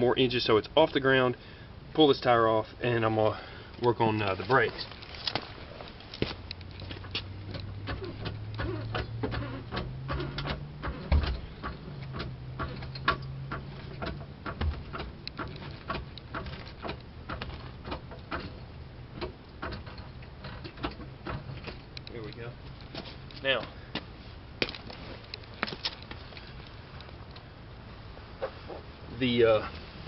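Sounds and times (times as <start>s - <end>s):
car jack clicking: 6.4s - 22.0s.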